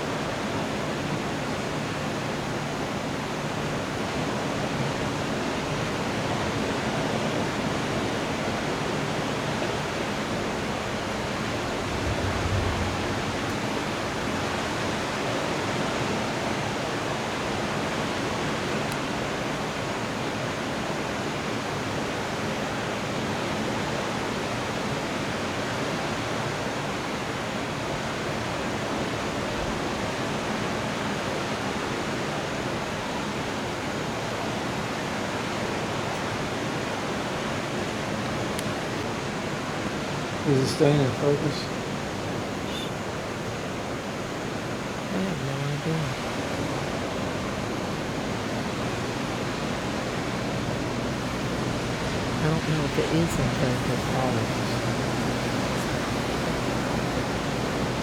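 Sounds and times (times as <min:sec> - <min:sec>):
heavy rain hissing: 0:10.9 - 0:15.7, 0:44.5 - 0:58.0
low thunder rumble: 0:11.0 - 0:15.4, 0:48.9 - 0:58.0.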